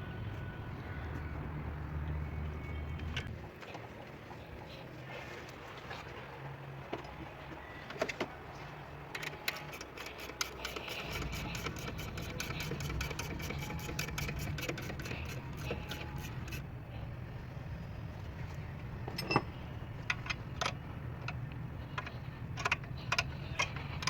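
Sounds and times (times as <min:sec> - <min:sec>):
fast chirping belt tick: 0:09.5 - 0:16.6.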